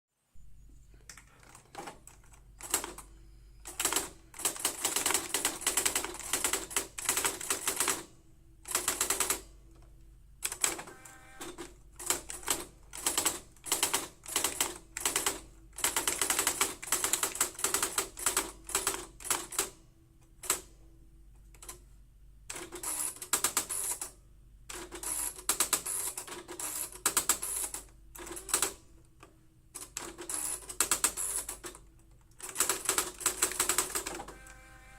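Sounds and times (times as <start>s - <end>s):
electronic typewriter clatter: 1.4s - 8.1s, 8.7s - 9.5s, 11.4s - 19.7s, 29.8s - 34.3s.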